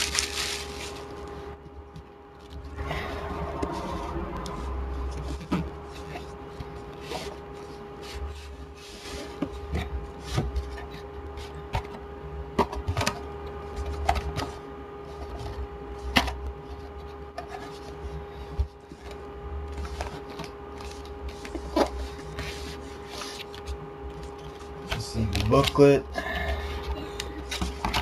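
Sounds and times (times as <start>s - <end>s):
cardboard and plastic rubbing: 0.0s - 1.6s, 13.8s - 26.0s
steady background hum: 0.0s - 28.0s.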